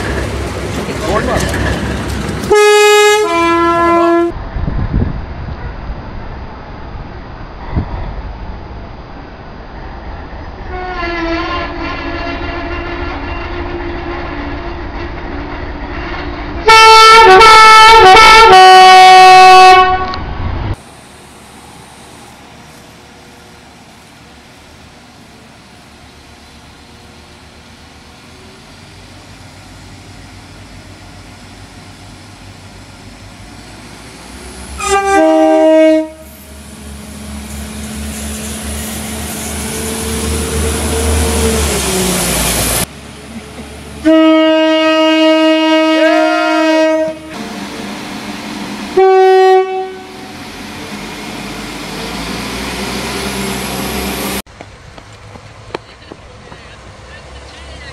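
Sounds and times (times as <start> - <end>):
train approaching: 0.0 - 57.9
train rumbling: 0.0 - 57.9
train horn: 2.5 - 4.4, 10.7 - 15.0, 16.6 - 20.2, 34.8 - 36.4, 44.0 - 47.4, 48.9 - 50.3.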